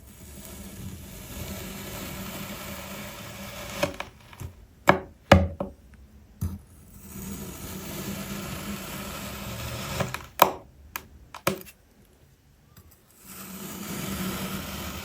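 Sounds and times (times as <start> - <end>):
sharp chops in sand: 11.4 - 11.7.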